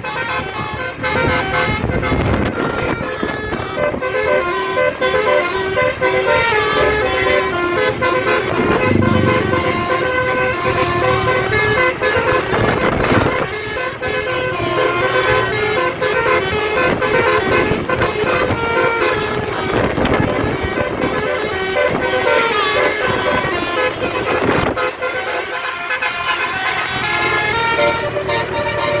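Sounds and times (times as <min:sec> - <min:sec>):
bus engine and road noise: 0:00.0 - 0:29.0
musical air horn melody: 0:00.0 - 0:29.0
rush of noise: 0:08.4 - 0:10.3.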